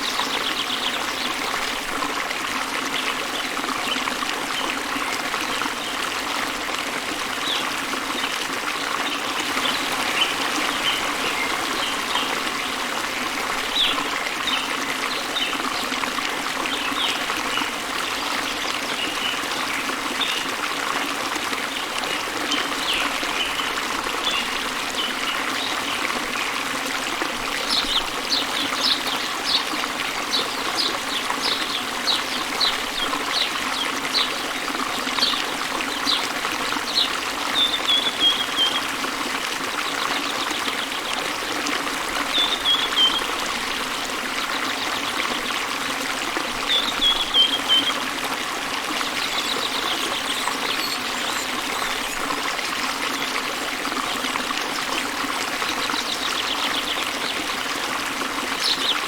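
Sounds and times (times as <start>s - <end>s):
waterfall and river running: 0.0s - 59.0s
birds chirping: 9.1s - 12.8s, 27.6s - 34.5s, 49.0s - 52.3s.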